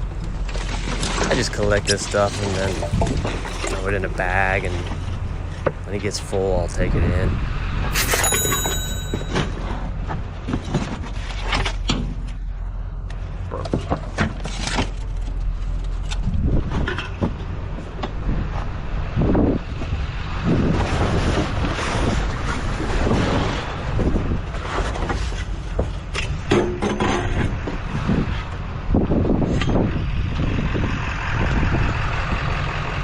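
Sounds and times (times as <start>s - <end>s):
debris clanking in dumpster: 0.0s - 5.9s
low engine rumble: 0.0s - 26.5s, 27.3s - 33.0s.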